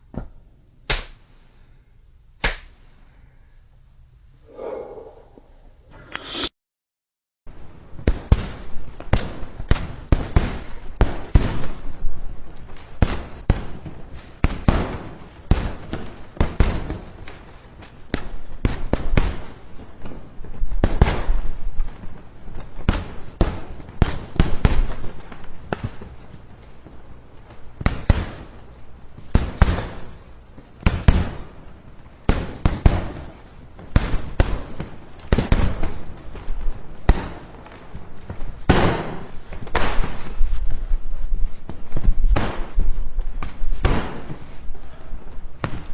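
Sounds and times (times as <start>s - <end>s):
punches and thuds: 8.0s - 11.9s, 12.8s - 17.4s, 20.8s - 22.0s, 22.9s - 26.2s, 27.8s - 28.6s, 30.8s - 31.6s, 32.3s - 40.6s, 41.6s - 44.6s, 45.6s - 45.9s.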